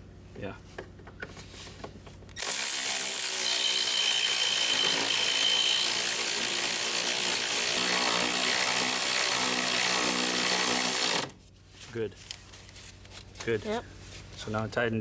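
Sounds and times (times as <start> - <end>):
power tool motor running: 2.4 - 11.4.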